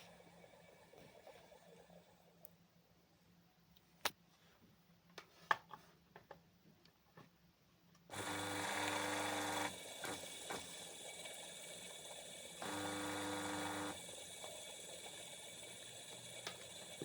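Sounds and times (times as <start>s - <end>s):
electric motor humming: 8.1s - 17.0s.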